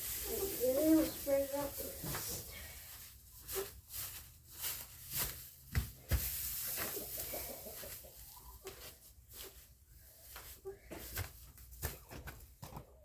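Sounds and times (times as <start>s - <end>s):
hay rustling: 0.0s - 11.5s
chickens clucking: 6.6s - 9.2s.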